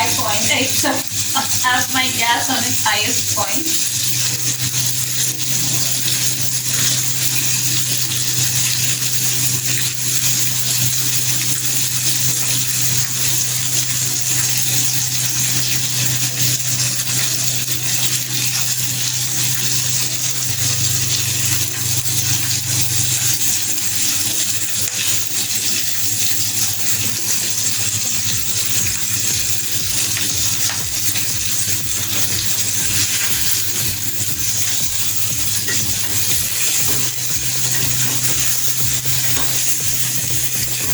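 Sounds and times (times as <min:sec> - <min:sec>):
low steady hum: 0:00.0 - 0:04.0
fish sizzling in oil: 0:00.0 - 0:40.9.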